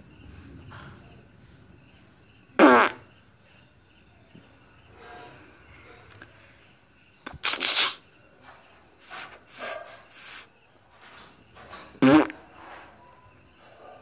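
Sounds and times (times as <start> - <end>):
person hissing: 7.3 - 8.0, 9.0 - 10.5.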